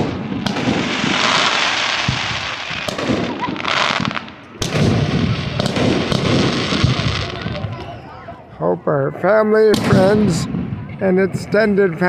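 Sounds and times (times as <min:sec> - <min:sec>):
fireworks shells bursting: 0:00.0 - 0:08.0
hissing crackle of fireworks: 0:00.0 - 0:08.3.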